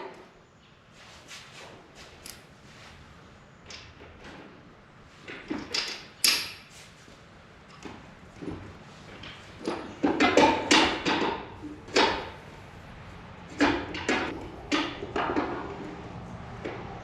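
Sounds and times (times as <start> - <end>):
metallic knocks and clanks: 7.7 - 12.4, 13.5 - 16.0.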